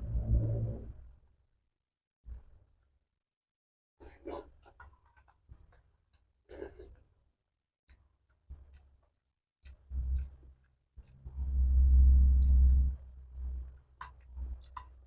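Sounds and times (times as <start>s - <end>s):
chewing soft food: 4.0s - 7.3s, 7.9s - 15.0s.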